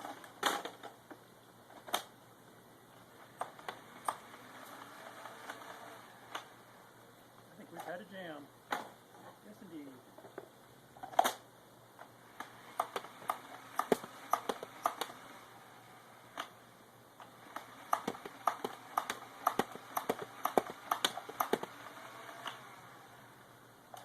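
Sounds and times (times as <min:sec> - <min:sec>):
plastic toy blaster clicks and rattles: 0:12.4 - 0:15.3, 0:17.2 - 0:22.8.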